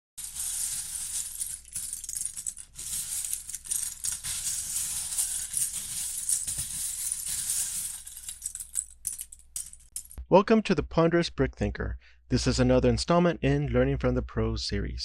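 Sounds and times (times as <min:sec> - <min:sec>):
plastic pieces rattling: 0:00.2 - 0:10.2.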